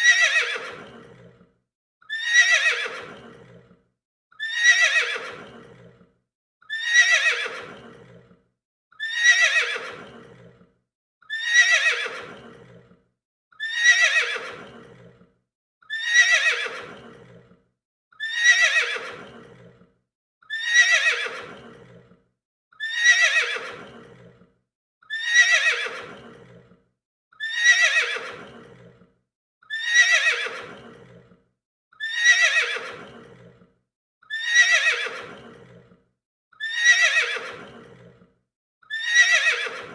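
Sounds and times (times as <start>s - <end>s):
horse whinnying: 0.0s - 1.4s, 2.1s - 3.6s, 4.4s - 6.0s, 6.7s - 8.3s, 9.0s - 10.6s, 11.3s - 12.8s, 13.6s - 15.2s, 15.9s - 17.5s, 18.2s - 19.8s, 20.5s - 22.1s, 22.8s - 24.4s, 25.1s - 26.7s, 27.4s - 29.0s, 29.7s - 31.3s, 32.0s - 33.6s, 34.3s - 35.9s, 36.6s - 38.2s, 38.9s - 39.9s.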